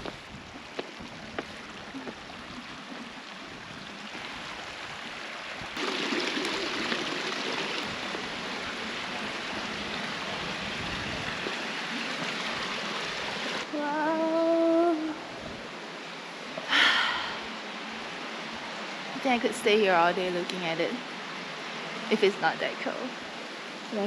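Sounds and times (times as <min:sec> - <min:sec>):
water rushing: 0:00.0 - 0:24.0.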